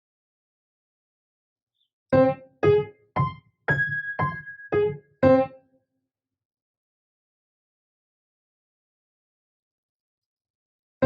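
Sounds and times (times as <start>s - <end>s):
piano single notes: 2.2s - 5.6s.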